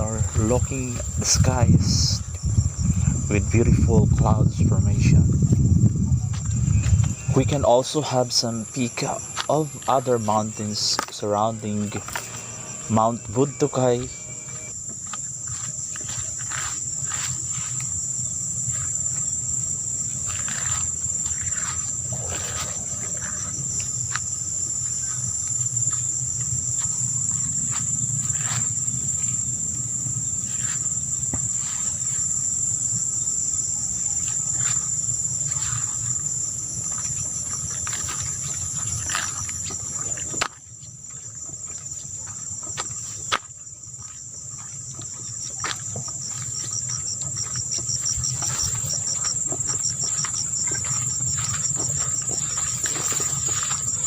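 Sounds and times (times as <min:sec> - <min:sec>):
low rumble: 0:00.0 - 0:08.0
crickets trilling: 0:00.0 - 0:54.0.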